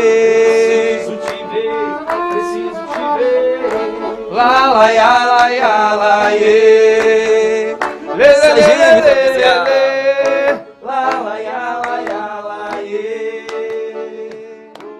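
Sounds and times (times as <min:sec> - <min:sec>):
accordion chords: 0:00.0 - 0:14.9
person singing: 0:00.0 - 0:14.9
percussion strikes: 0:08.3 - 0:09.6.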